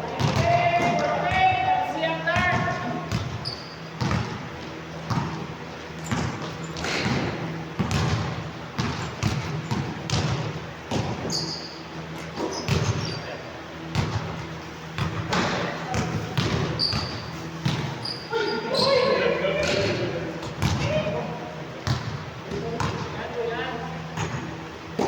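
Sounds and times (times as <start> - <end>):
basketball bouncing: 0.1 - 1.6, 2.4 - 11.5, 12.1 - 13.1, 13.8 - 18.0, 19.6 - 21.0, 21.8 - 23.1
sneaker squeaks: 2.4 - 7.4, 8.8 - 10.2, 10.9 - 13.9, 14.8 - 21.1.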